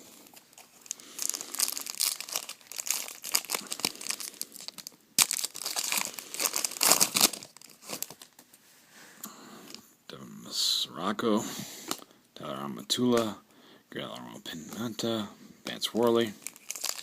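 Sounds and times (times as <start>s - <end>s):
foil wrapper crackling: 0.3s - 8.3s, 16.4s - 17.0s.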